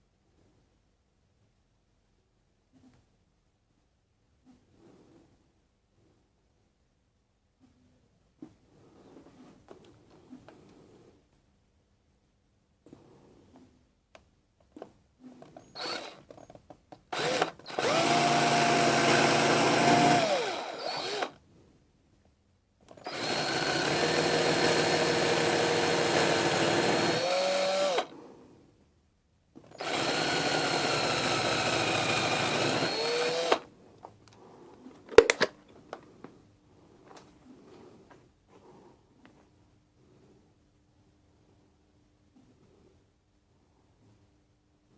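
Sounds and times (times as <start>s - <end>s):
small power drill running: 15.7s - 16.3s, 17.1s - 21.4s, 22.9s - 28.1s, 29.7s - 33.7s.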